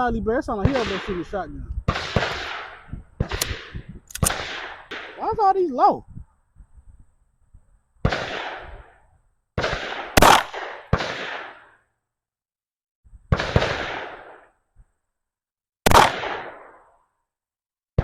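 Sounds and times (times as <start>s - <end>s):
gunshots with echo: 0.6s - 1.3s, 1.9s - 5.4s, 8.0s - 8.9s, 9.6s - 11.8s, 13.3s - 14.5s, 15.9s - 16.9s.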